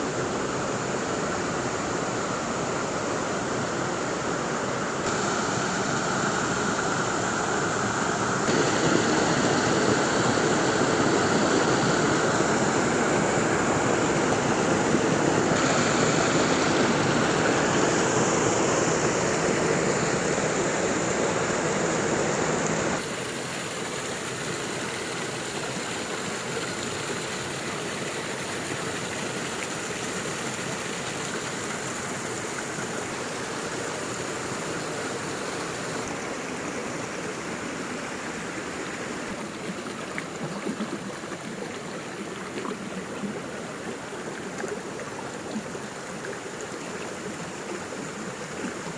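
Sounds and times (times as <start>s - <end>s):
waterfall rushing: 4.1s - 23.2s.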